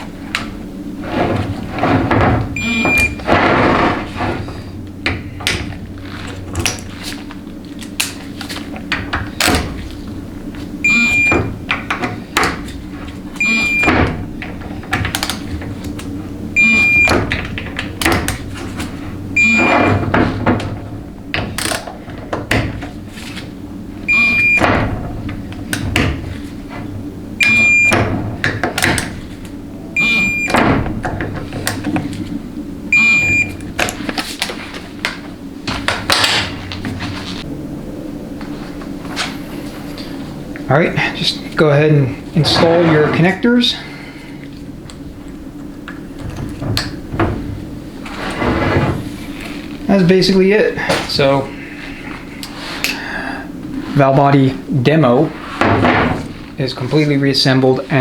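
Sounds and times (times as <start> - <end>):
short electronic beep: 2.6 - 3.2, 10.9 - 11.4, 16.6 - 17.1, 19.4 - 19.9, 30.0 - 30.5, 33.0 - 33.5.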